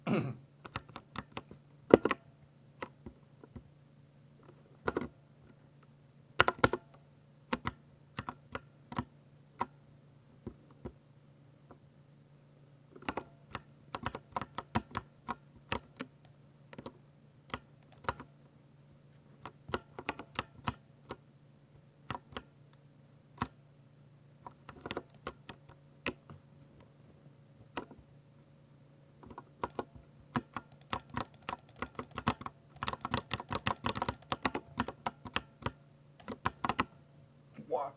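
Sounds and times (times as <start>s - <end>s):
mechanical keyboard typing: 13.0s - 16.1s, 16.8s - 18.3s, 24.5s - 26.3s, 29.2s - 36.9s.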